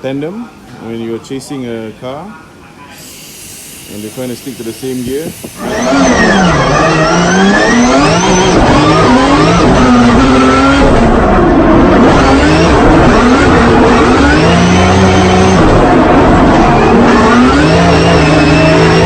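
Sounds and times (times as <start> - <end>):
car engines revving hard: 5.6 - 19.0.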